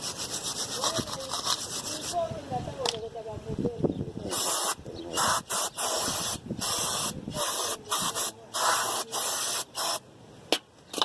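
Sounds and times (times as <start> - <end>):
aerosol spray hissing: 4.3 - 10.0.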